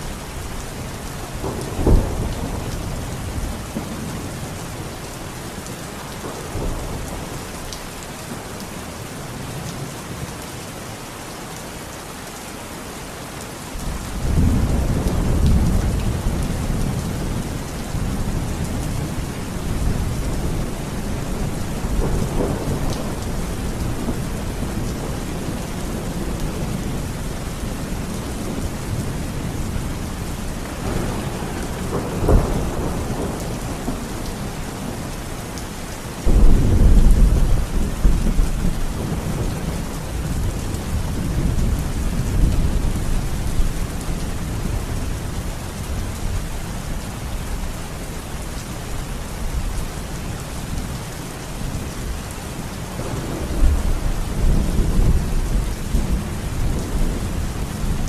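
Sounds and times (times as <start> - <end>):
heavy rain: 0.0 - 58.0
thunder rumbling and cracking: 1.3 - 4.6, 13.9 - 46.4, 52.9 - 58.0.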